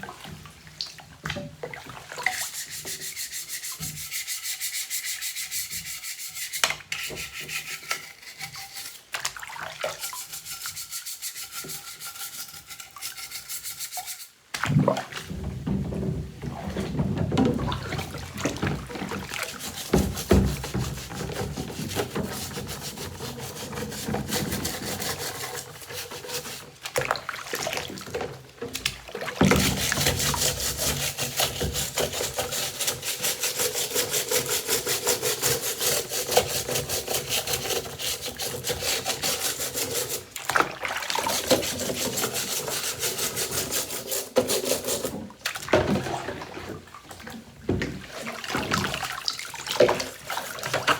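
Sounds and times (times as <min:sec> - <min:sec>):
hand scrubbing vacuum parts: 0:15.7 - 0:27.1, 0:28.2 - 0:45.6.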